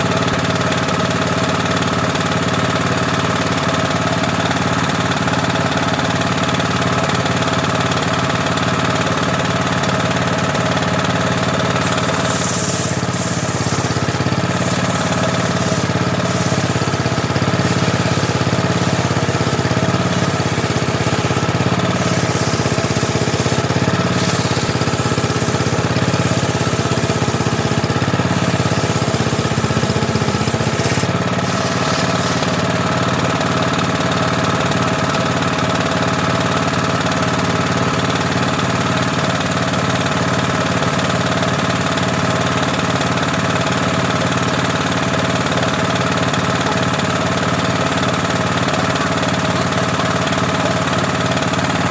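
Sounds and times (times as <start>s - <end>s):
table saw running: 0.0s - 51.9s
circular saw blade cutting wood: 9.9s - 34.3s.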